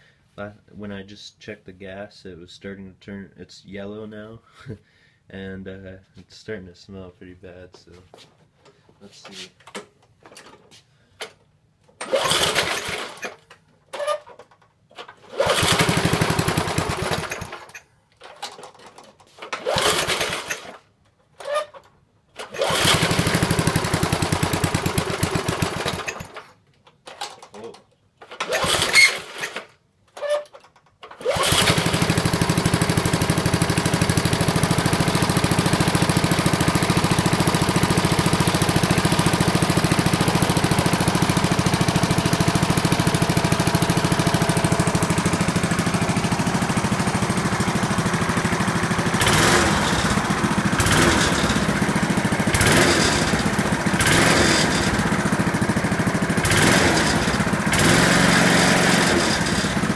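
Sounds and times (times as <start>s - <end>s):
lawn mower pull starter: 11.2s - 59.9s
lawn mower engine running: 12.0s - 13.4s, 15.2s - 18.7s, 19.3s - 20.8s, 22.4s - 26.5s, 28.3s - 29.7s, 31.1s - 59.9s.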